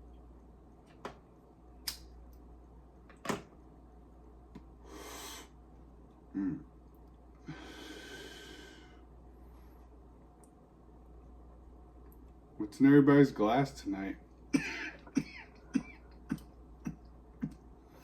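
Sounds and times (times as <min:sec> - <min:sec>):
grunt-like voice sound: 0:06.3 - 0:06.7
breathy exhale: 0:07.4 - 0:09.0.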